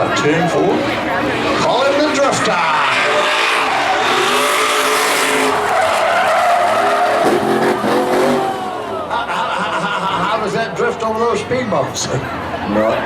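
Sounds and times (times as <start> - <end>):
tires squealing: 0.0 - 10.2
truck engine revving hard: 0.4 - 10.0.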